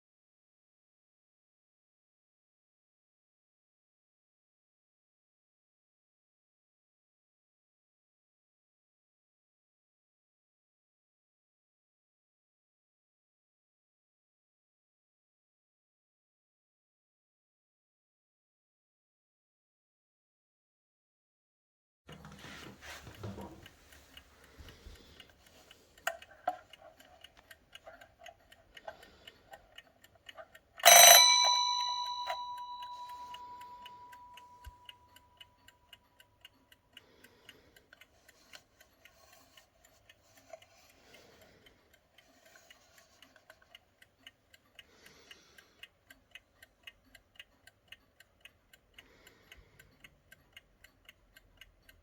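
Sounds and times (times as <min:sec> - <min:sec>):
alarm clock ticking: 0:22.1 - 0:52.0
alarm clock bell ringing: 0:30.8 - 0:34.4.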